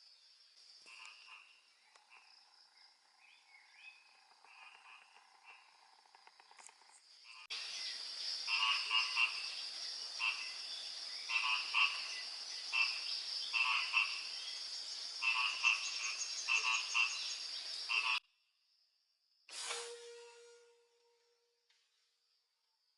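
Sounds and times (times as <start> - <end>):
frogs croaking: 0.0 - 18.2.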